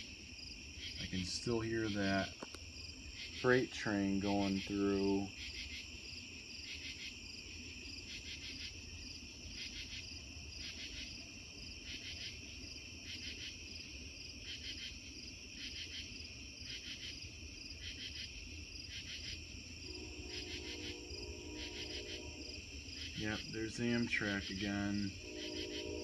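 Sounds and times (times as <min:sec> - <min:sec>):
distant freight train rumble: 0:00.0 - 0:06.2, 0:19.4 - 0:26.0
insects chirping: 0:00.0 - 0:26.0
distant train horn: 0:19.9 - 0:26.0.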